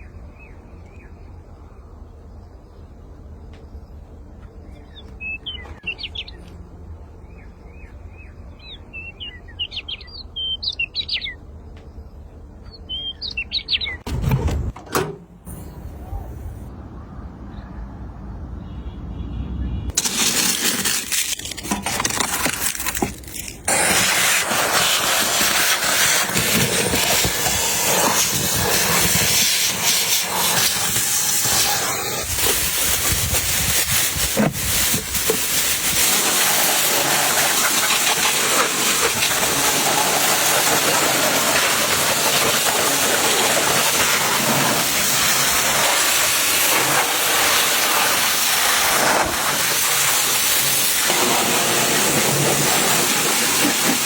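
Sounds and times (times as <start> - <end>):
high-pressure spray hissing: 23.7 - 54.0.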